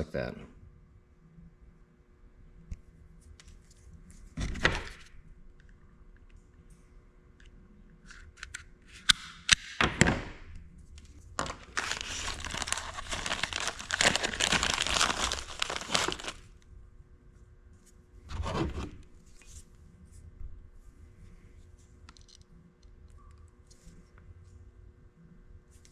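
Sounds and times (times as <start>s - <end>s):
crinkling and tearing: 11.4s - 16.6s.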